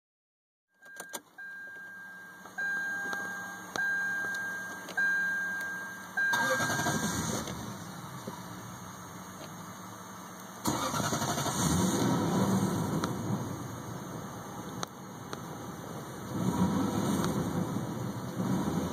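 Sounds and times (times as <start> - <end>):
car chime high tone: 0.7 - 7.8
car engine cranking: 0.8 - 9.7, 10.3 - 18.9.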